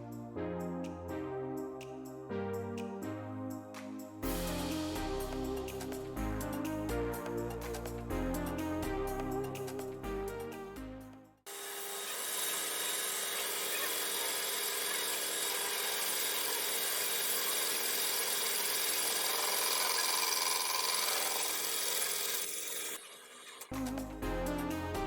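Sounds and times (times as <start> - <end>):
background music: 0.0 - 11.4, 23.7 - 25.0
power tool rasping hiss: 11.5 - 23.7.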